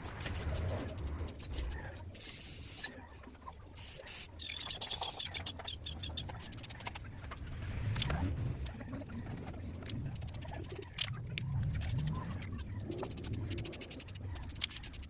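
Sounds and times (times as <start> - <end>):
spray can hissing: 0.0 - 2.9, 3.8 - 5.2.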